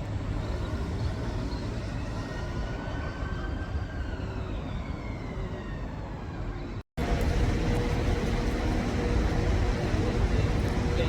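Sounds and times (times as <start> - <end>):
steady loud hum: 7.0 - 11.0.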